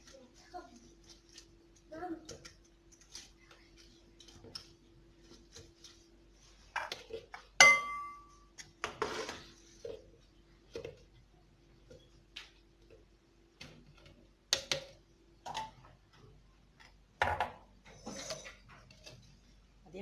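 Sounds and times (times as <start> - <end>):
faint steady hum: 0.0 - 20.0
dishes and utensils clinking: 7.6 - 8.4, 17.3 - 19.2.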